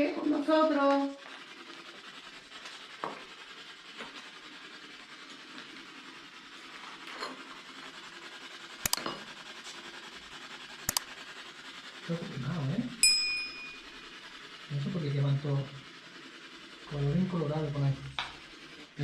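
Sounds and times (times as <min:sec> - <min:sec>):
sharp clicks: 0:08.8 - 0:09.0, 0:10.9 - 0:11.1.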